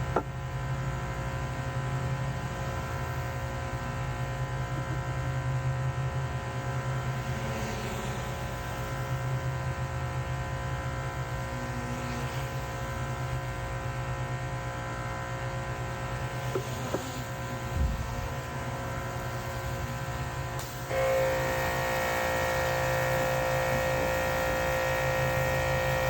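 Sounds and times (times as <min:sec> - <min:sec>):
pressure washer running: 0:19.2 - 0:26.0.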